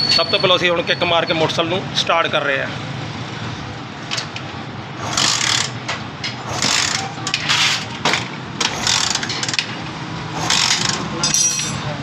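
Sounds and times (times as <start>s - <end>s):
engine chain clatter: 4.1s - 12.0s.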